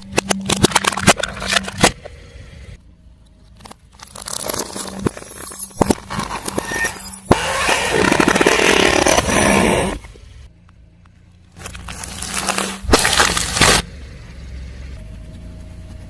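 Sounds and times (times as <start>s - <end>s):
tyre crushing crunchy objects: 3.8s - 10.1s, 11.5s - 13.9s.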